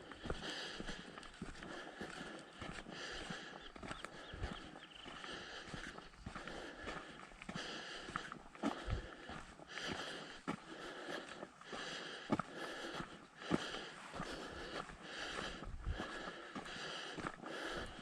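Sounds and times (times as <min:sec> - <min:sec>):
footsteps on dirt trail: 0:00.0 - 0:18.0
person breathing hard: 0:00.0 - 0:18.0.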